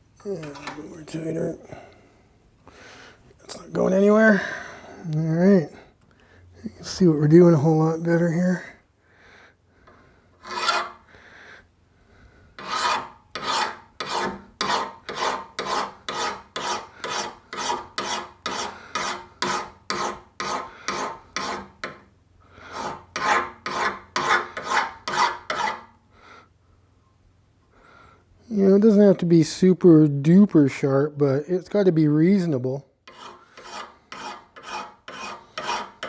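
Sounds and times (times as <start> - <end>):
hand file rasping on metal blade: 10.4 - 11.0, 12.6 - 22.0, 22.6 - 25.9, 33.1 - 36.0.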